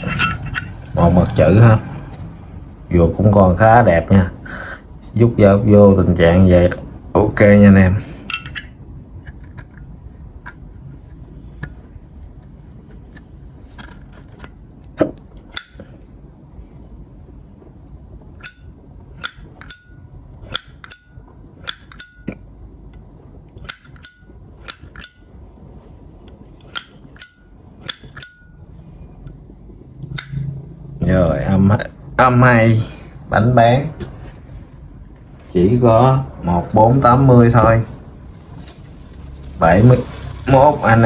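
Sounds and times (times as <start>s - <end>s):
lighter lid metallic clink: 18.4s - 22.3s, 23.6s - 25.3s, 26.6s - 28.6s, 30.0s - 30.4s.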